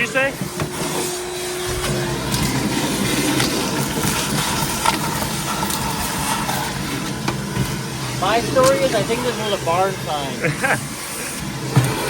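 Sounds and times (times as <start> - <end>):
small electric motor tool running: 0.0 - 12.0.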